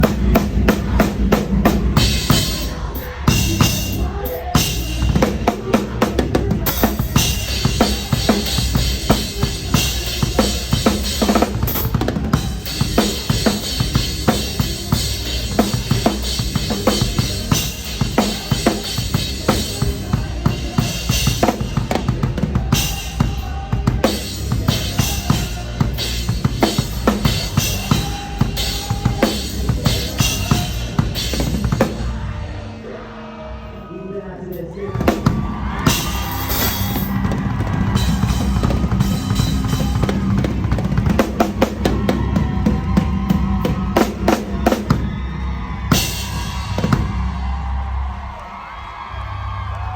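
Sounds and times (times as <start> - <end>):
crash and ride cymbals: 0.0 - 32.2, 35.1 - 45.2
rock drum kit: 0.0 - 32.3, 34.9 - 48.2.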